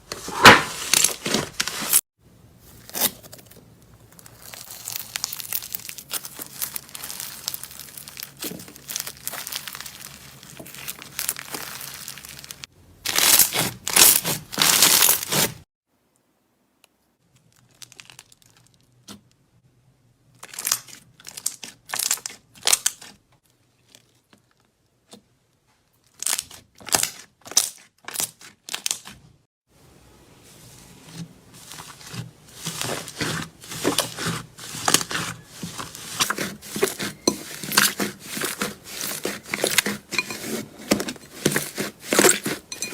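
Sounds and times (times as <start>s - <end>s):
slime crackling and popping: 2.8s - 15.5s.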